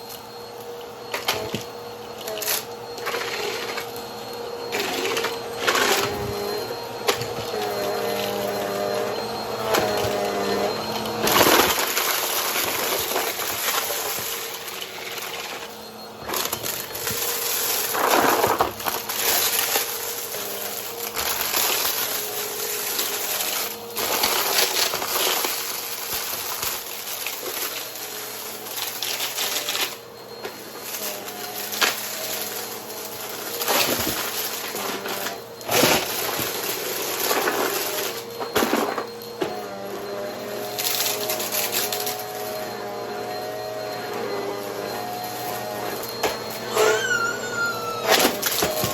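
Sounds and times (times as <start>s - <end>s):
upright vacuum cleaner on carpet: 0.0s - 48.9s
debris crackling in vacuum: 11.0s - 15.5s.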